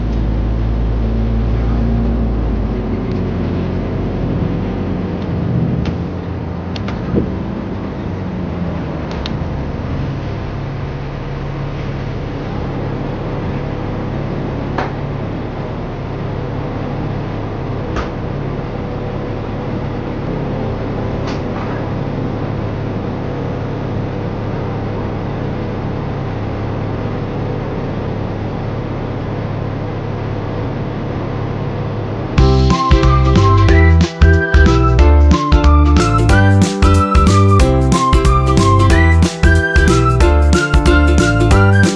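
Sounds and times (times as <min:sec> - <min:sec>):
bus engine and road drone: 0:00.0 - 0:41.9.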